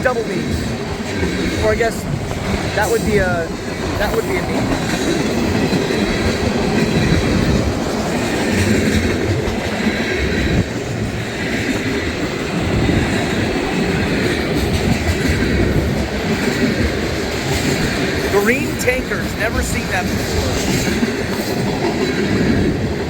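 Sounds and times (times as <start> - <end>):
freight train wheels on rail: 0.0 - 23.0.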